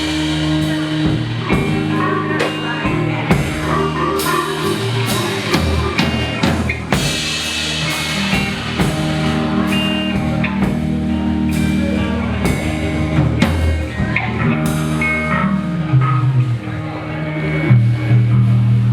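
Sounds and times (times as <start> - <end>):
drum kit hits: 0.0 - 15.0
sustained guitar chords: 0.0 - 18.9.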